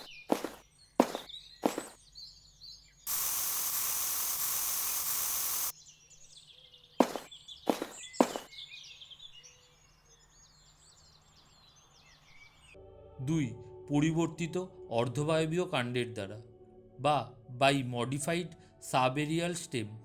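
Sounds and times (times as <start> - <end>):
small birds chirping: 0.0 - 12.8
loud even hiss: 3.1 - 5.7.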